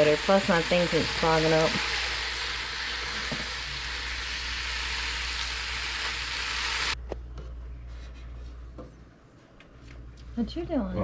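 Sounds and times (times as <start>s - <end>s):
food sizzling in a pan: 0.0s - 7.0s.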